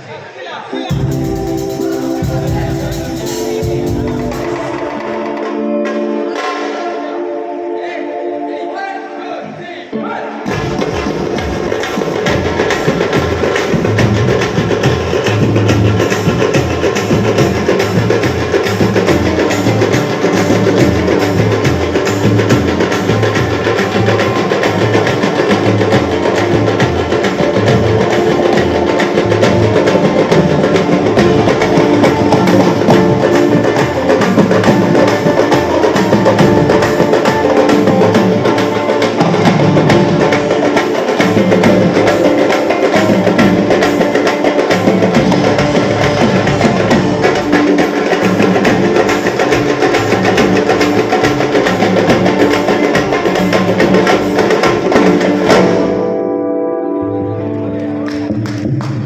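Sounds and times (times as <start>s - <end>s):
band playing percussive music: 0.7s - 7.6s, 10.4s - 56.5s, 57.4s - 59.0s
pounding drum beat: 0.8s - 5.8s, 10.4s - 56.1s
hand percussion: 0.8s - 7.0s, 10.5s - 56.1s.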